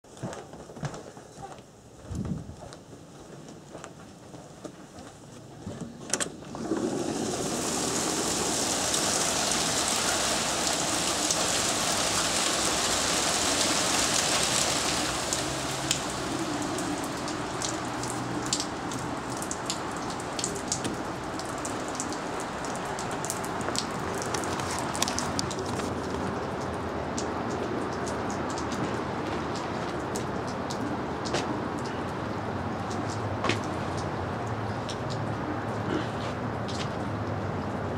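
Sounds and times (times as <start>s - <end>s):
hail and rain pattering: 6.6s - 35.8s.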